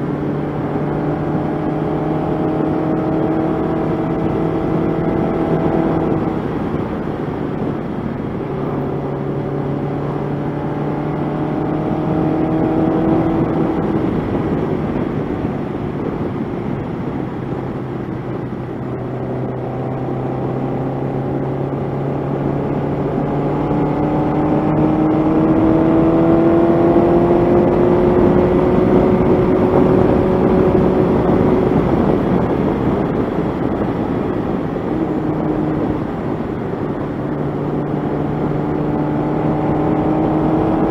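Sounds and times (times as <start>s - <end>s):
steady rushing noise: 0.0s - 40.9s.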